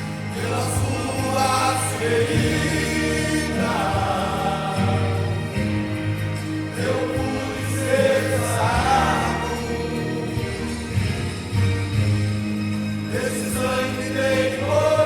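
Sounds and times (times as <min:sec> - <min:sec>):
choir singing: 0:00.0 - 0:15.0
instrumental backing: 0:00.0 - 0:15.0.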